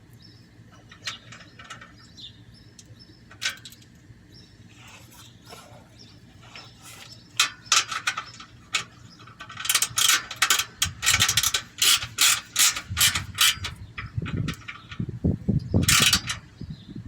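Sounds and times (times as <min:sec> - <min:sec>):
ratchet wrench clicking: 0:07.4 - 0:14.8, 0:15.8 - 0:16.4.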